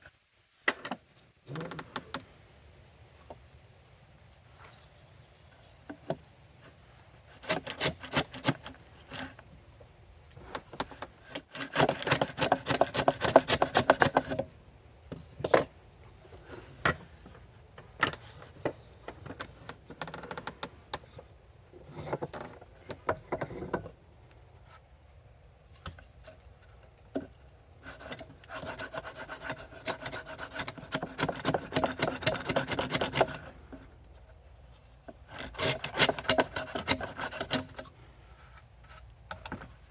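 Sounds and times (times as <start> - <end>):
hand tool rasping through wood: 7.3 - 9.3, 11.3 - 14.5, 27.9 - 33.6, 35.2 - 37.8.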